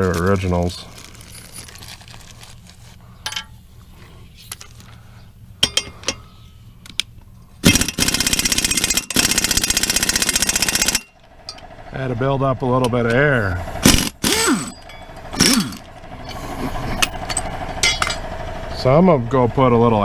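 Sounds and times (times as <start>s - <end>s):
air impact wrench rattling: 5.6s - 6.3s, 7.6s - 12.1s, 12.7s - 18.4s.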